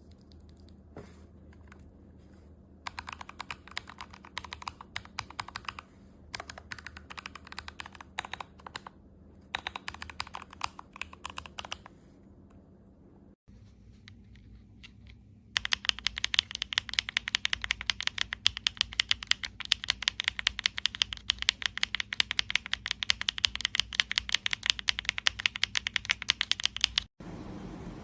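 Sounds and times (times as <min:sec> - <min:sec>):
mechanical keyboard typing: 0:02.8 - 0:11.9, 0:15.6 - 0:27.1.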